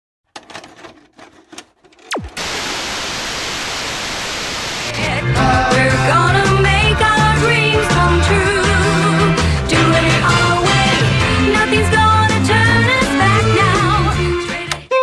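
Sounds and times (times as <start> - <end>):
static hiss: 2.1 - 5.2
intro music with bass and melody: 2.1 - 14.6.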